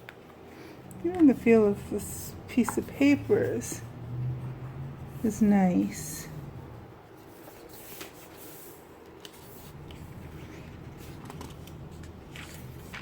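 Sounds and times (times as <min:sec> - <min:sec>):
thin pages rustling: 0:07.2 - 0:13.0.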